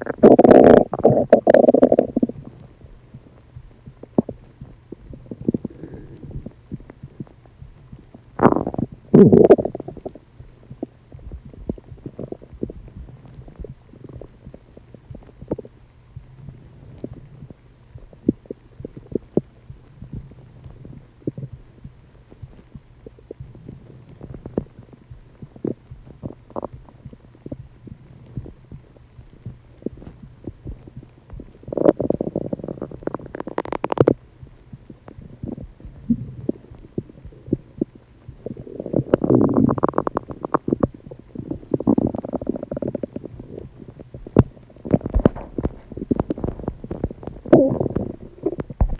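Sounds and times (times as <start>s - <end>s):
stomach gurgling: 0.0s - 48.9s.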